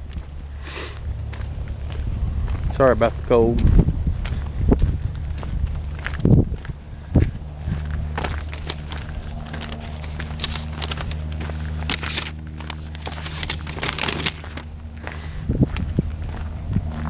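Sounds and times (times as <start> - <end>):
footsteps crunching on trail: 0.0 - 17.0
steady low hum: 0.0 - 17.0
scattered crackles: 8.0 - 14.7.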